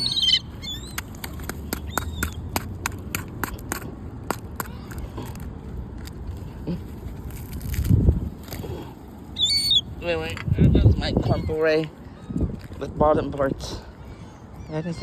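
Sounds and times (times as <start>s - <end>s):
birds squawking: 0.0s - 2.6s, 9.3s - 12.8s, 13.4s - 15.0s.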